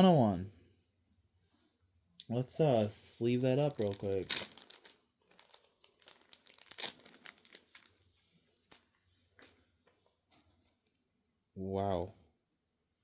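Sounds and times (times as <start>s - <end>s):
plastic sleeve crinkling: 2.6s - 10.0s.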